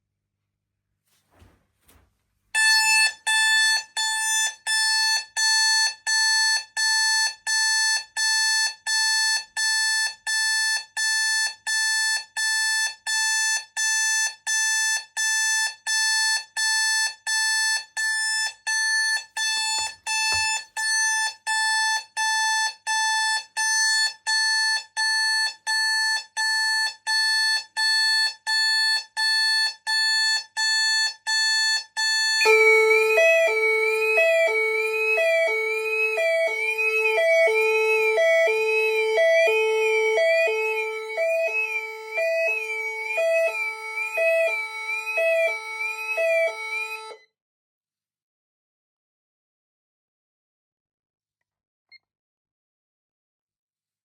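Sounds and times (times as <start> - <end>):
pulsed electronic alarm beep: 2.6 - 47.2
warbling alarm siren: 32.1 - 47.2.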